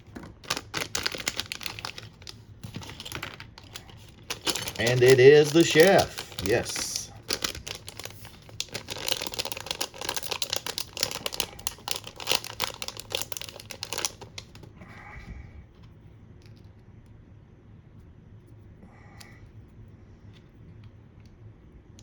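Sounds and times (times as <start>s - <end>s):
plastic packet crinkling: 0.0s - 14.7s
small plastic pieces rattling: 0.1s - 14.6s.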